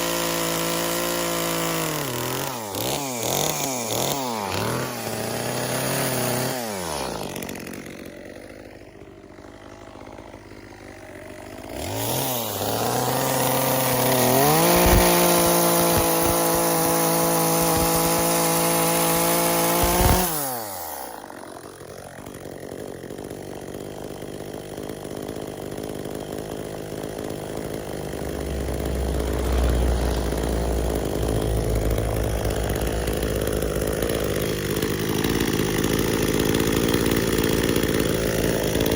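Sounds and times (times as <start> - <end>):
chainsaw revving while carving wood: 0.0 - 38.9.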